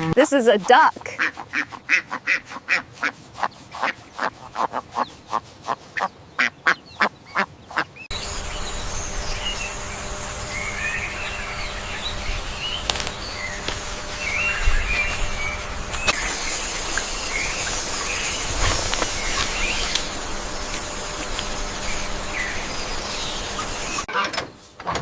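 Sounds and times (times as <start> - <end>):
duck quacking: 0.4 - 7.9
outdoor hiss and rumble: 6.1 - 24.1.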